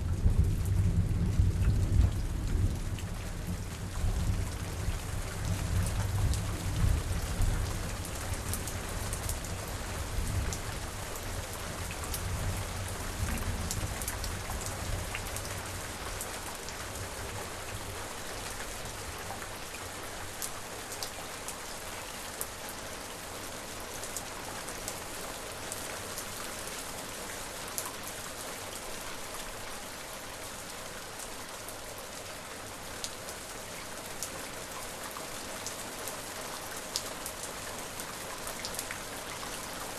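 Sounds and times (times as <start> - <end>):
thunder rumble: 0.0 - 7.5
raindrops ticking on surface: 0.0 - 21.8
steady rain falling: 0.0 - 39.9.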